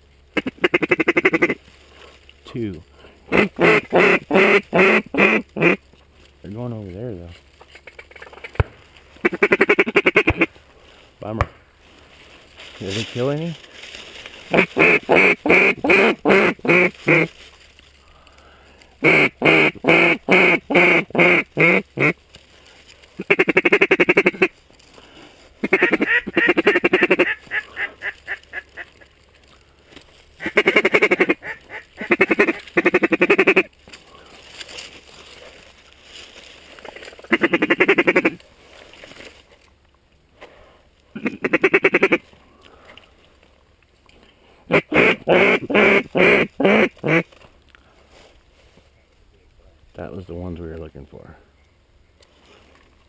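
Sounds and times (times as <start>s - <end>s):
duck call quacks: 0.4s - 1.6s, 3.3s - 5.8s, 9.2s - 10.5s, 14.5s - 17.3s, 19.0s - 22.2s, 23.2s - 24.5s, 25.6s - 28.9s, 30.4s - 33.7s, 37.2s - 38.4s, 41.2s - 42.2s, 44.7s - 47.3s
rapid chattering duck call: 0.4s - 1.6s, 3.3s - 5.8s, 7.7s - 8.6s, 9.2s - 10.5s, 14.5s - 17.3s, 19.0s - 22.2s, 23.2s - 24.5s, 25.6s - 28.9s, 30.4s - 33.7s, 37.2s - 38.4s, 41.2s - 42.2s, 44.7s - 47.3s.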